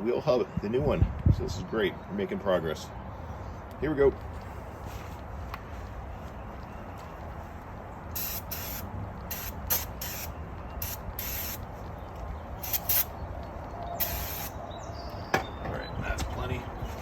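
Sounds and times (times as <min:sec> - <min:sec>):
aerosol spray hissing bursts: 0:08.2 - 0:11.6, 0:12.6 - 0:13.1, 0:14.0 - 0:14.5.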